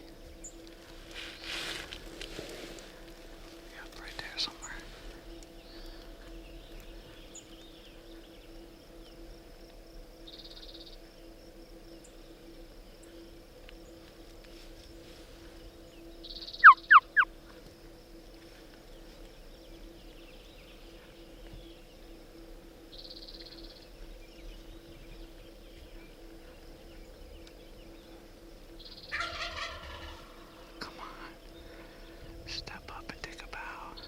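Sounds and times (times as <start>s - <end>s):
faint chorus of insects or frogs: 0.0s - 34.0s
sharp turkey-style calls: 16.6s - 17.3s, 29.1s - 30.5s.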